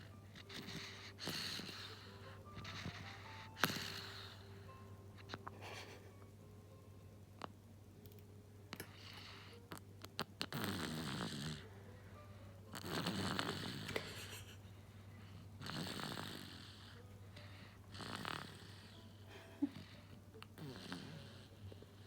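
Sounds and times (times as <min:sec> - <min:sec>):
baby snoring: 0:00.0 - 0:05.4, 0:08.8 - 0:11.7, 0:12.7 - 0:14.5, 0:15.2 - 0:22.0.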